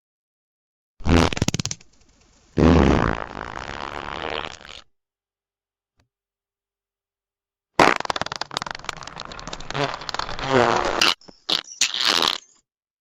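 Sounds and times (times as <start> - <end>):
fart sound effects: 1.0 - 1.7, 2.6 - 4.9, 7.8 - 12.6.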